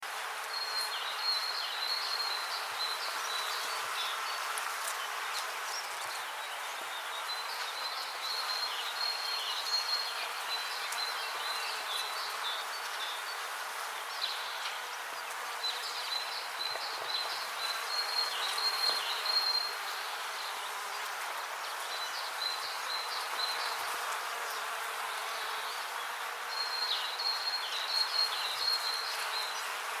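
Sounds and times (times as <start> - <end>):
bees buzzing: 10.2 - 30.0.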